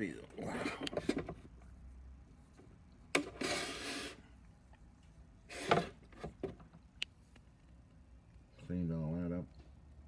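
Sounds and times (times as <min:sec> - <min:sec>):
scraping rub: 0:03.4 - 0:04.2.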